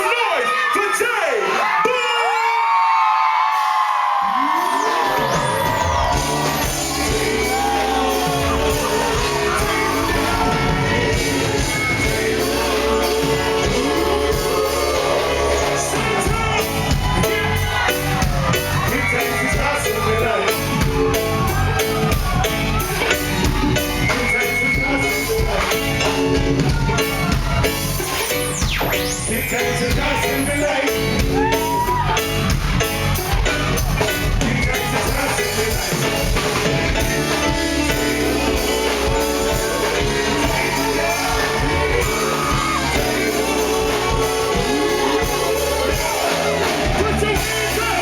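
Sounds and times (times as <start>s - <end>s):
reggae band playing: 3.3s - 48.0s
person singing: 4.4s - 27.4s.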